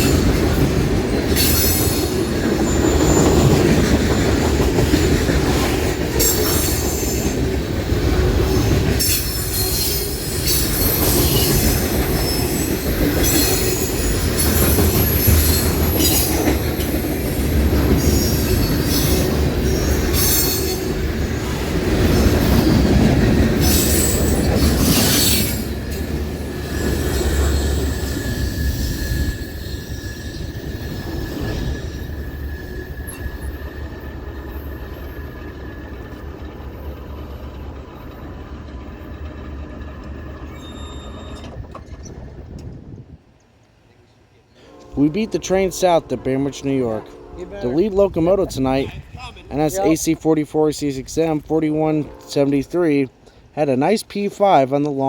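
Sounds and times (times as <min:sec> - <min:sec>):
freight train cars rumbling: 0:00.0 - 0:55.0
high-pitched wheel squeal: 0:08.5 - 0:20.9, 0:23.6 - 0:36.1, 0:40.4 - 0:42.4.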